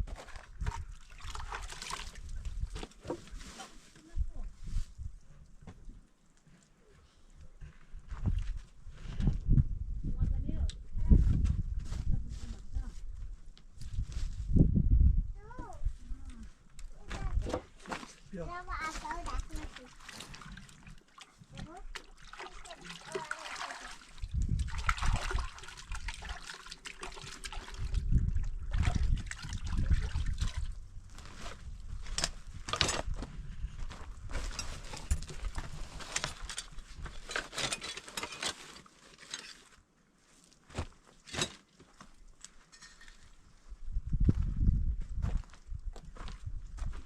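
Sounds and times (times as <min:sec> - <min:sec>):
water sloshing and trickling: 0:00.0 - 0:06.4, 0:17.3 - 0:33.2, 0:34.2 - 0:43.6.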